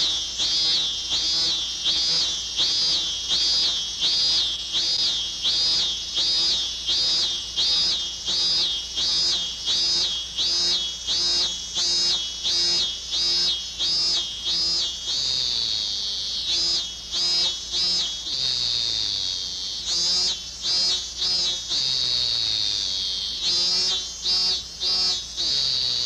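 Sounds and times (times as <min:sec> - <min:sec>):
cicada singing: 0:00.0 - 0:09.1, 0:23.0 - 0:25.8.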